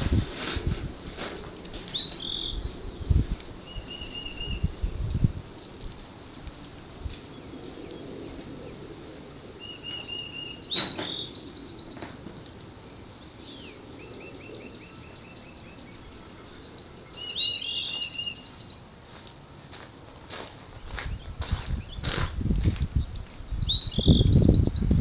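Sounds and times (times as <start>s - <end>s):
songbird chirping: 1.4s - 5.8s, 9.6s - 19.2s, 20.4s - 22.2s, 22.8s - 25.0s.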